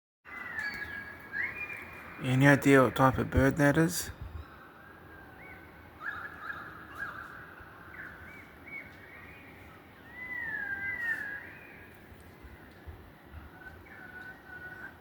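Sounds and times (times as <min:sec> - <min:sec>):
bird singing warbling calls: 0:00.3 - 0:12.8.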